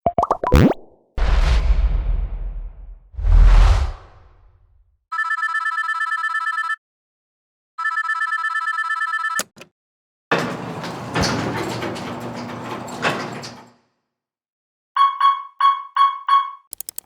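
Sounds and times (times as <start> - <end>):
low thump: 1.2 - 4.5
telephone ringing: 5.1 - 6.8, 7.8 - 9.5
sharp clicks: 16.7 - 17.0.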